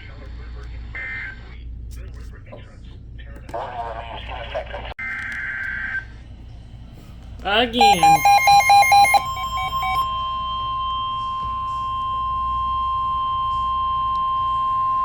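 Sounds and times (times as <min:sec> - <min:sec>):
rapid pulsing data beeps: 0:07.8 - 0:10.0
steady electronic alert tone: 0:07.8 - 0:10.0.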